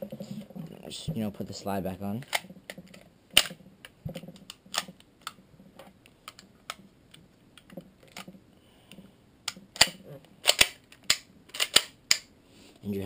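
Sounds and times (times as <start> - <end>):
pistol slide clicks and clacks: 9.5 - 12.3.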